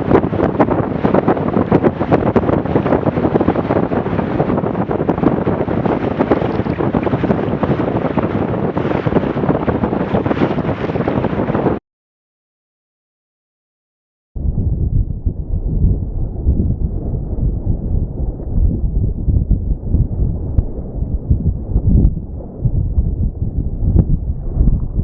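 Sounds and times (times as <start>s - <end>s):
water rushing along hull: 0.0s - 11.8s
wind buffeting microphone: 0.0s - 11.8s, 14.4s - 25.0s.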